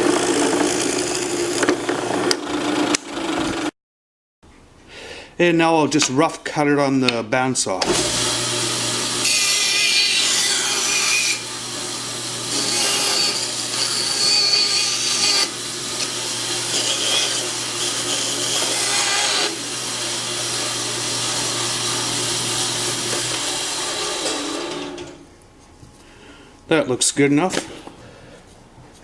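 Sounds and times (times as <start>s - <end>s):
bandsaw cutting wood: 0.0s - 3.7s, 7.8s - 25.2s.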